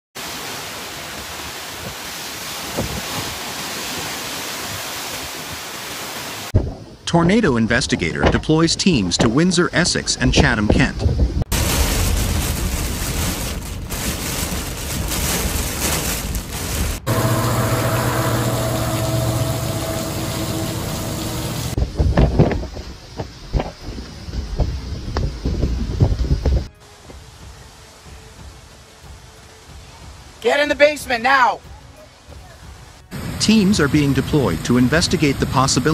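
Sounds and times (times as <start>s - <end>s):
strong storm wind rushing: 10.6s - 26.7s
low hum: 16.8s - 21.9s.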